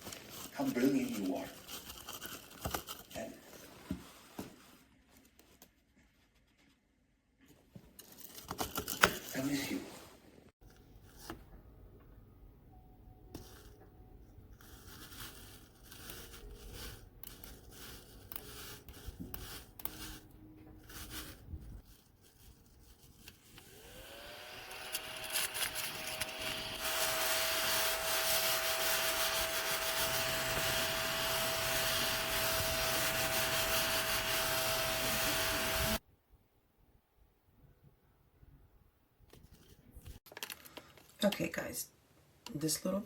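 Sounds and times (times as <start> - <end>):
mini vacuum cleaner running: 23.6 - 36.0.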